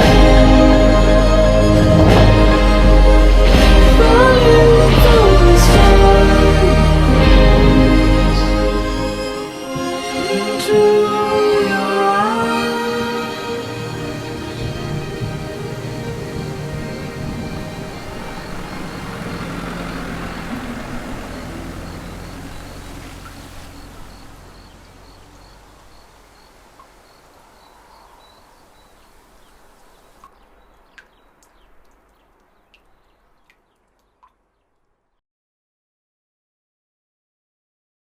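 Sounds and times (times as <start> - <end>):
music: 0.0 - 20.1.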